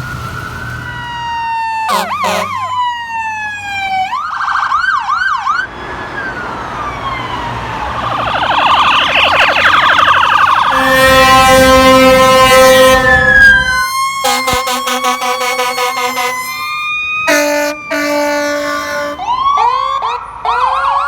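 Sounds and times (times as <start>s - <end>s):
ambulance siren wailing: 0.0s - 21.0s
long horn blast: 1.9s - 2.8s, 10.6s - 19.3s.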